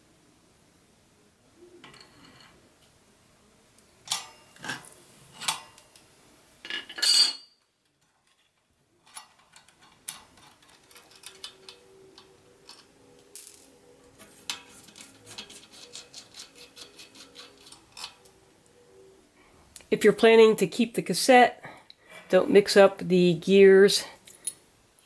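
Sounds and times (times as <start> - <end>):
metal bicycle parts clanking: 4.1 - 5.8, 6.6 - 7.6, 9.0 - 13.6, 14.2 - 18.4.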